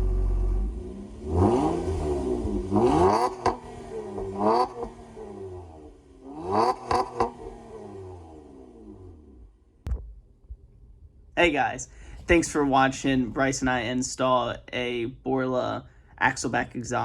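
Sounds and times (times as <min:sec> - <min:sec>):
car engine revving: 0:00.0 - 0:09.6.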